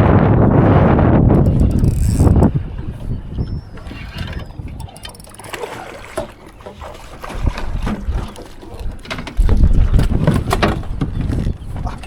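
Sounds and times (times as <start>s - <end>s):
water lapping against boat hull: 1.2s - 12.0s
knocks and clicks: 1.3s - 2.5s.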